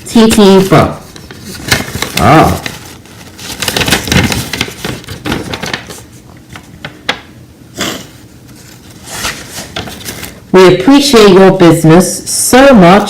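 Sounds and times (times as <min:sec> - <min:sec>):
paper and plastic rustling: 0:00.2 - 0:07.2, 0:08.4 - 0:10.4.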